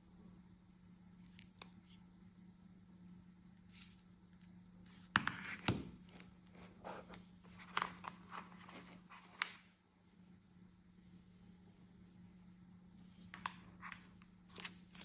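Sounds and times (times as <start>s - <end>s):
cardboard and plastic rustling: 6.5s - 9.8s.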